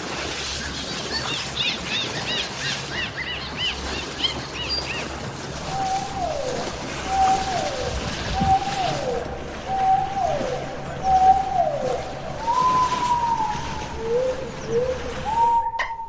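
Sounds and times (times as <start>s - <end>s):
dolphin whistles and chirps: 5.6s - 16.0s.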